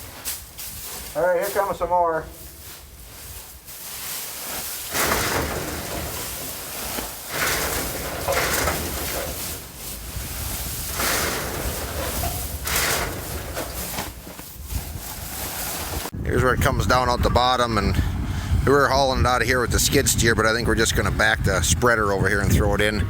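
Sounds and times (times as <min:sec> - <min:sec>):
silage scraping and rustling: 0:00.0 - 0:16.2.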